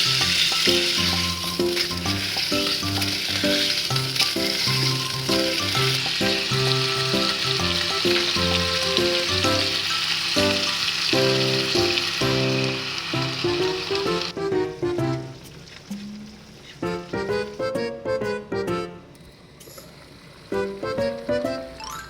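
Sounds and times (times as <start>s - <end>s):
background music: 0.0s - 16.2s, 16.8s - 19.8s, 20.6s - 22.0s
food sizzling in a pan: 0.0s - 17.6s.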